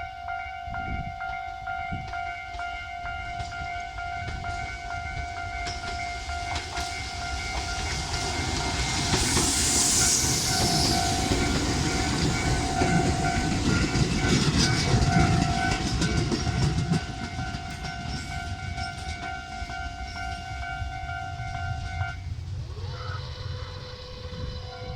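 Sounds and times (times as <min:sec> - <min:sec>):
electric train running over rails: 0:00.0 - 0:24.9
level-crossing warning bell: 0:00.0 - 0:24.9.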